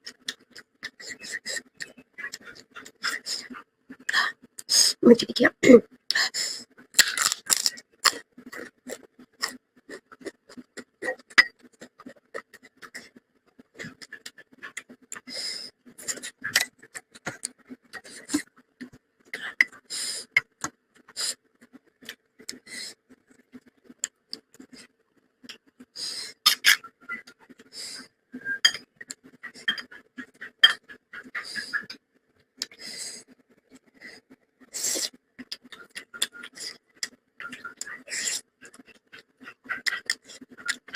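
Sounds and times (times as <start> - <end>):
person chewing food: 0.0 - 4.7, 6.8 - 27.7, 28.4 - 40.9
dishes clinking: 28.6 - 28.9.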